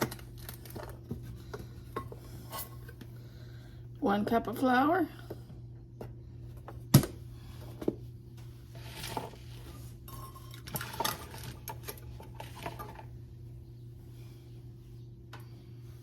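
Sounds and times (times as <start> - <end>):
soft scraping and rustling: 8.4 - 13.1.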